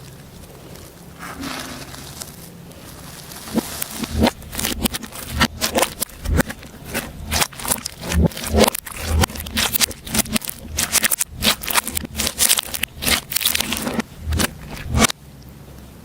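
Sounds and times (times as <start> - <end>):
slime squishing and popping: 3.2 - 15.1.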